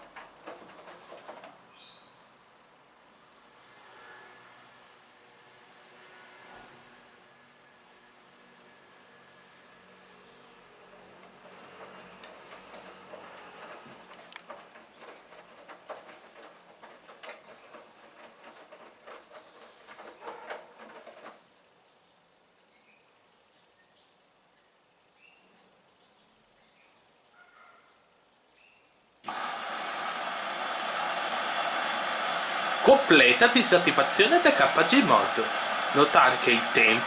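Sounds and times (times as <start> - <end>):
washing machine drum sloshing: 0.0 - 1.7, 10.9 - 21.4
loud steady rushing noise: 30.0 - 37.0.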